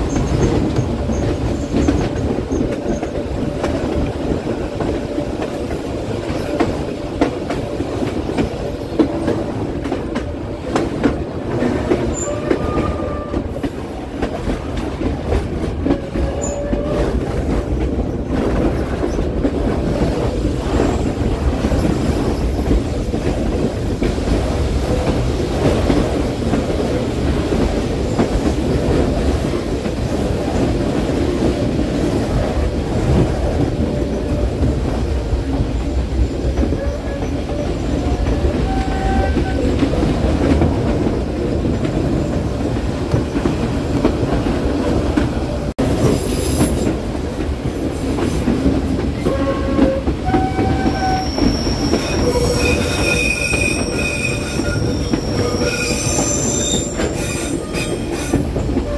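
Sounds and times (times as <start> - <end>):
train wheels rumbling on rails: 0.0 - 58.9
wheel flange squeals: 49.3 - 58.4.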